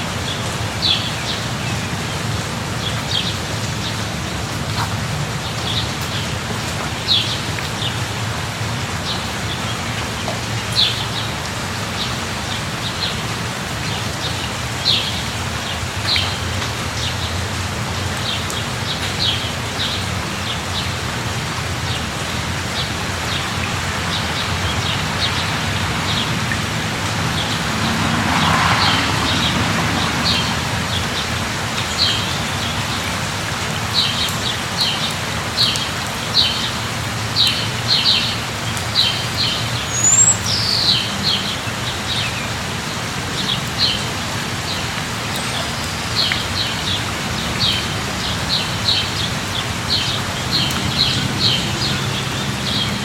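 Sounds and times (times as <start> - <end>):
steady rain: 0.0 - 53.0
bird chirping: 39.9 - 41.1.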